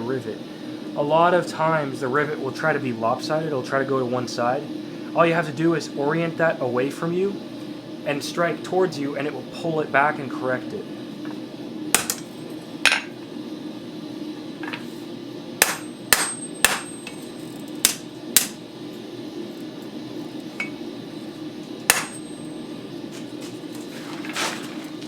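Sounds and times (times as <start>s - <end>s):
steady low hum: 0.0s - 25.0s
hand hammer striking rivet: 12.0s - 12.3s, 15.6s - 17.2s, 17.8s - 18.6s, 21.9s - 22.4s.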